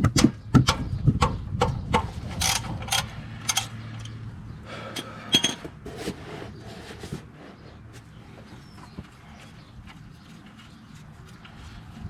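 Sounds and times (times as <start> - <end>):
metal tools clinking and knocking: 2.0 - 4.2, 4.9 - 5.8.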